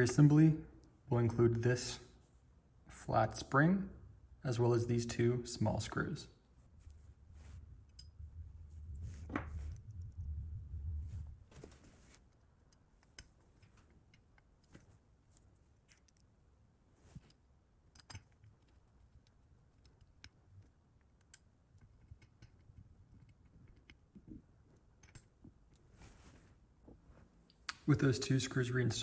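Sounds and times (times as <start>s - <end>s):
clicks of small metal parts: 12.7s - 16.3s, 17.2s - 24.0s.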